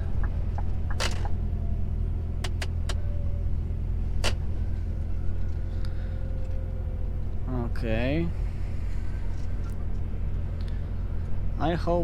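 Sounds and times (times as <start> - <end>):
truck engine low rumble: 0.0 - 12.0
sharp clicks and knocks: 0.2 - 1.4.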